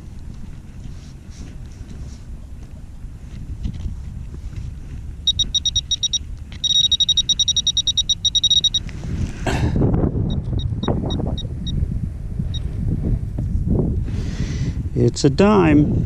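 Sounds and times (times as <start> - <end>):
metal detector beeping: 5.2 - 8.9, 10.3 - 11.8.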